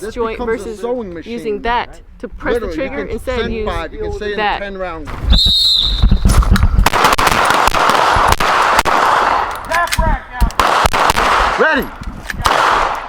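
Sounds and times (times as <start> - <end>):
pistol shots: 6.3 - 13.0.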